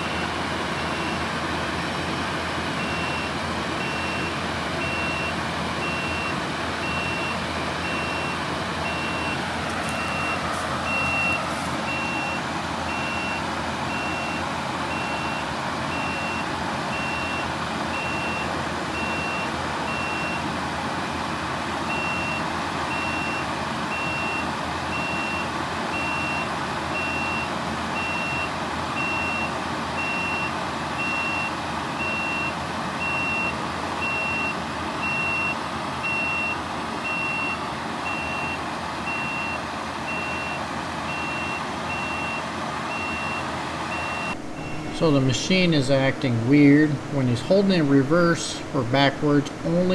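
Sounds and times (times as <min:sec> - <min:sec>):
backup alarm beeping: 0:00.0 - 0:21.3, 0:21.9 - 0:49.9
loader engine running: 0:00.0 - 0:49.9.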